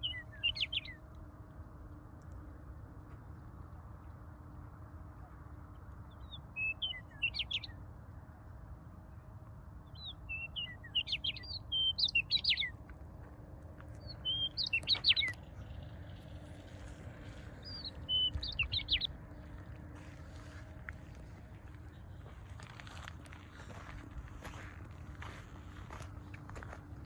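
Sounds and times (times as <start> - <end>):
songbird singing: 0.0 - 1.3, 5.2 - 7.8, 9.8 - 12.9, 13.8 - 26.8
low background rumble: 0.0 - 27.0.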